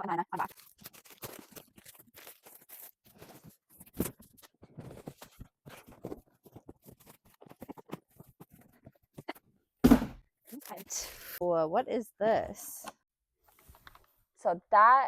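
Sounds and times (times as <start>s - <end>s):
packaging rustling: 0.4s - 8.8s
loud knock: 9.8s - 10.2s.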